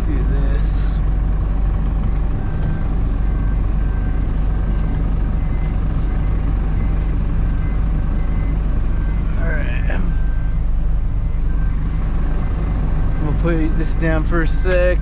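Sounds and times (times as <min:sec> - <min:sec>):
truck diesel engine running: 0:00.0 - 0:15.0
faint short beeps: 0:02.4 - 0:04.1.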